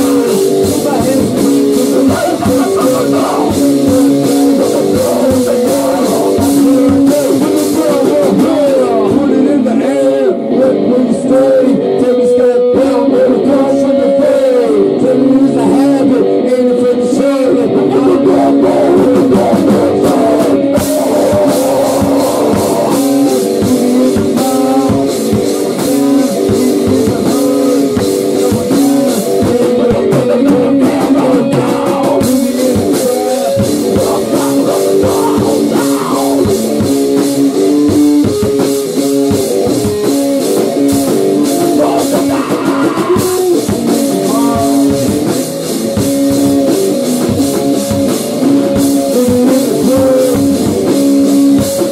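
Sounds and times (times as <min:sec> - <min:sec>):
drum kit: 0:00.0 - 0:51.9
electric guitar: 0:00.0 - 0:51.9.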